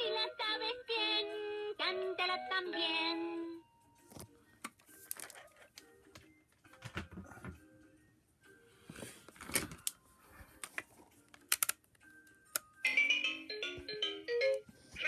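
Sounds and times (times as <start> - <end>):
plastic toy buttons clicking: 11.4 - 11.8.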